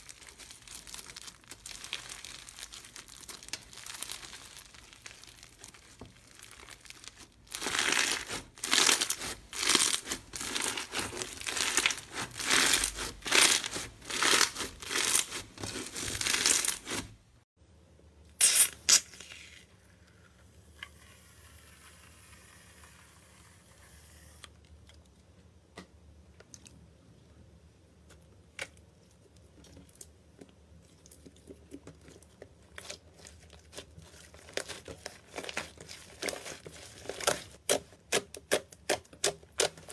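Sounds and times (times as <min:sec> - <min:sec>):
slime crackling and popping: 0:00.0 - 0:17.2, 0:32.7 - 0:39.9.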